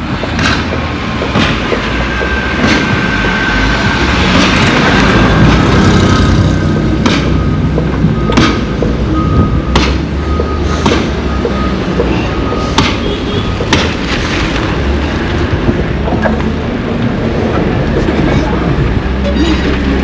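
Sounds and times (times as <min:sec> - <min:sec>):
heavy machinery rumble: 0:00.0 - 0:20.0
sharp knocks or bangs: 0:00.3 - 0:03.5, 0:06.8 - 0:09.0, 0:09.7 - 0:14.1
backup alarm beeping: 0:06.2 - 0:13.9.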